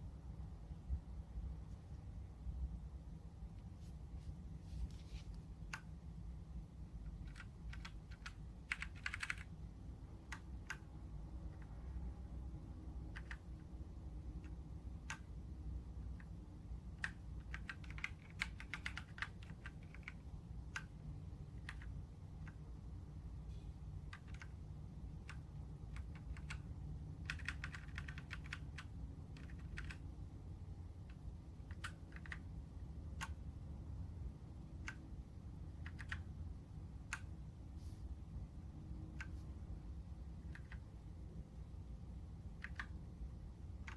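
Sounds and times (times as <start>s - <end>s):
low steady hum: 0.0s - 43.9s
mechanical keyboard typing: 7.0s - 11.8s, 13.1s - 13.7s, 14.3s - 15.4s, 16.1s - 22.6s, 24.0s - 30.2s, 31.0s - 33.5s, 34.7s - 37.4s, 40.4s - 41.0s, 42.5s - 43.0s.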